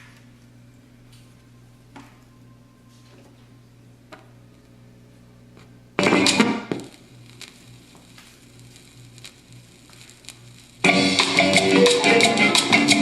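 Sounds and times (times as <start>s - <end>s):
record player humming: 0.0s - 13.0s.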